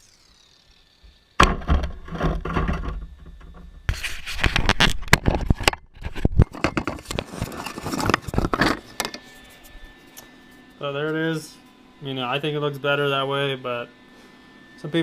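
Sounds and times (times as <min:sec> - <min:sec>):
angle grinder grinding steel: 0:00.0 - 0:04.9, 0:06.8 - 0:13.9
sharp knocks: 0:01.4 - 0:03.7.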